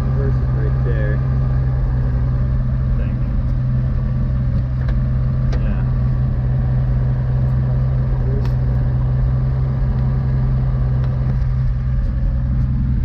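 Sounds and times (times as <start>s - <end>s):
truck engine running: 0.0s - 13.0s.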